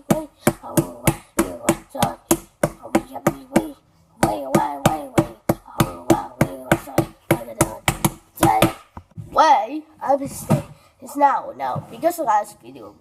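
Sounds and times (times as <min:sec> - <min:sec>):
person humming or chanting: 0:00.0 - 0:08.7.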